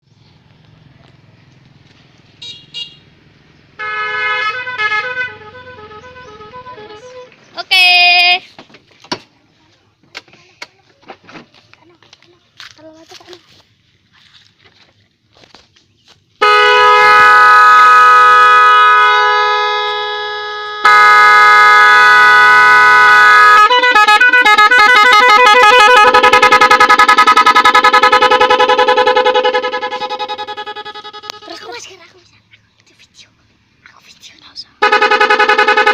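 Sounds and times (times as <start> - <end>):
multi-tone horn playing tune: 3.8 - 7.3, 16.4 - 31.8, 34.8 - 35.9.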